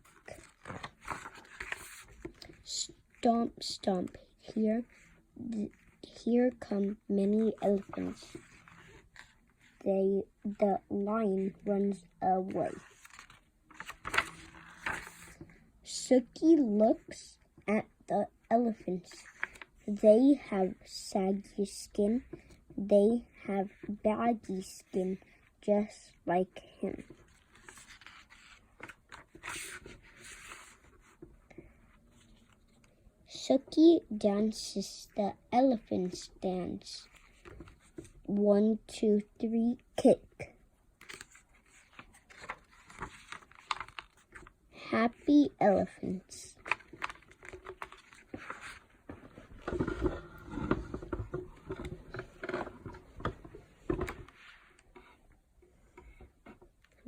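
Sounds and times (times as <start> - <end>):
paper page rustling: 0.0 - 2.6, 7.4 - 9.4, 12.7 - 15.4, 19.2 - 19.7, 27.0 - 31.2, 41.0 - 44.5, 46.6 - 54.8.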